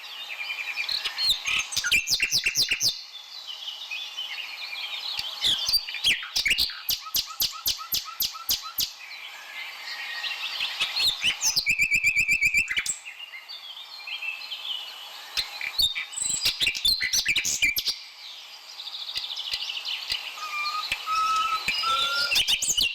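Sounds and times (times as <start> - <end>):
birds chirping and singing: 0.1 - 22.9
fast bird trill: 20.1 - 22.9.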